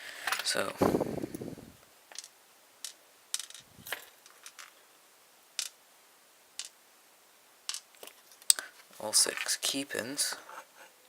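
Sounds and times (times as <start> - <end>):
small lock parts clicking: 7.7 - 8.6.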